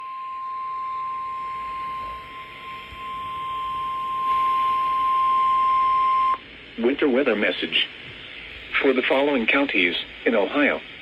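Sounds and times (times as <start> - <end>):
radio hiss: 1.5 - 11.0.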